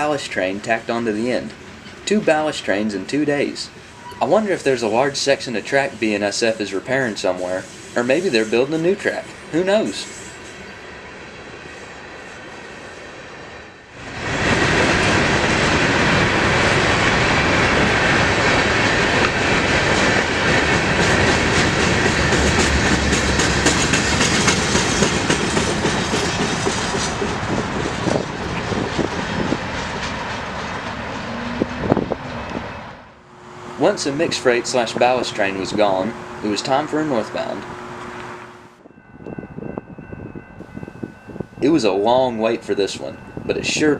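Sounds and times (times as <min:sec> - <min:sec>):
freight train cars rolling: 0:00.0 - 0:43.9
wheels clacking over rail joints: 0:14.2 - 0:32.8.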